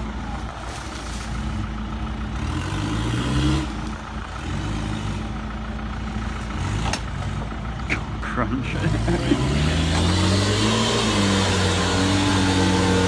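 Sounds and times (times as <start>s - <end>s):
engine revving under load: 1.4s - 13.0s.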